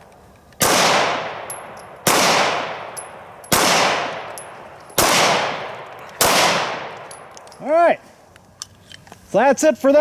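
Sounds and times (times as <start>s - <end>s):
pistol shots echoing: 0.6s - 7.4s.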